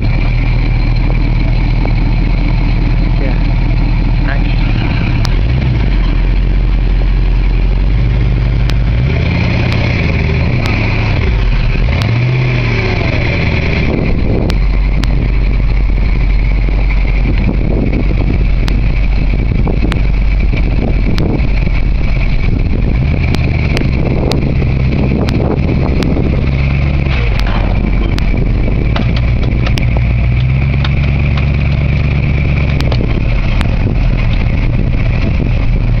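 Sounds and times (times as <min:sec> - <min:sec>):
forklift engine revving: 0:00.0 - 0:36.0
metallic clicks and knocks: 0:27.0 - 0:34.5.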